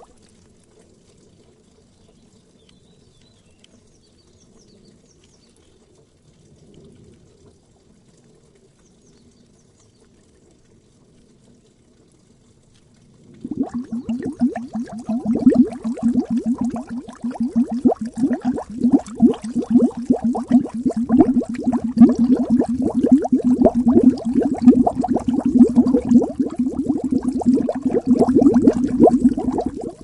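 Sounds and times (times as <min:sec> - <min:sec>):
water bubbling and gurgling: 0:00.0 - 0:00.2, 0:13.2 - 0:30.0.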